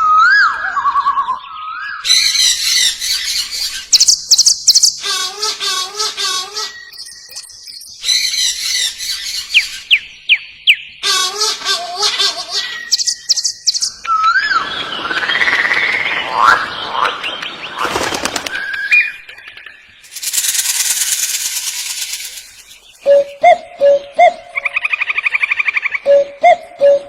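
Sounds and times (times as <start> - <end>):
bird chirps and whistles: 0.0 - 10.8
high buzzing bird rasp: 2.1 - 7.3, 20.0 - 23.0.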